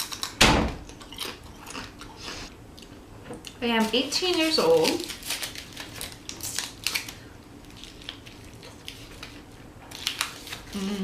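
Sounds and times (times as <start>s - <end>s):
chewing and mouth sounds: 0.0s - 3.6s.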